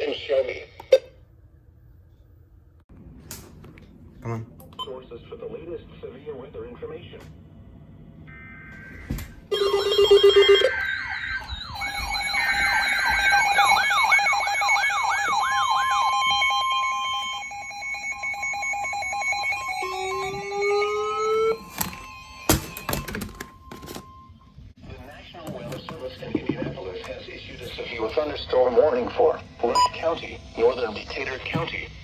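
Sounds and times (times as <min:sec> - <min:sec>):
electronic alert tones: 0:08.3 - 0:23.0.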